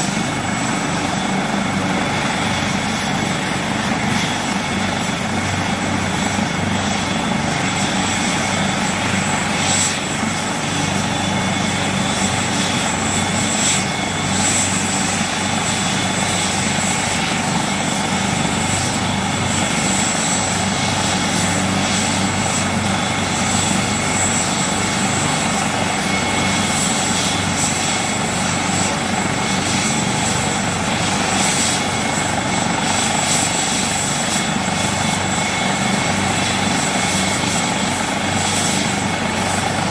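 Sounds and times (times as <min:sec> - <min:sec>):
helicopter rotor and turbine noise: 0:00.0 - 0:39.9.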